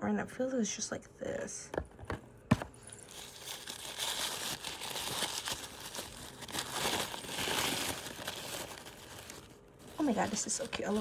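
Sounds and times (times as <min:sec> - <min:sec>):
plastic packaging crinkling: 0:02.5 - 0:11.0.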